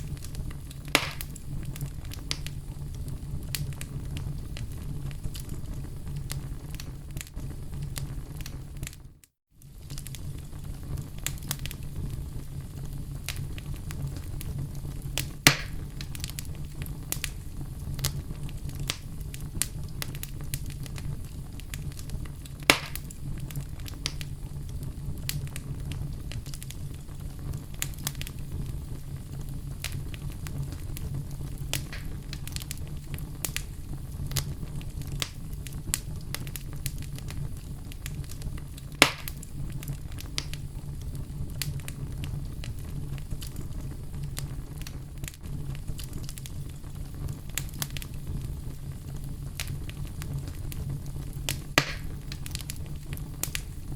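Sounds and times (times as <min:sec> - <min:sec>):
loud fire pops: 0:00.0 - 0:53.9
wood fire crackling: 0:00.0 - 0:53.9.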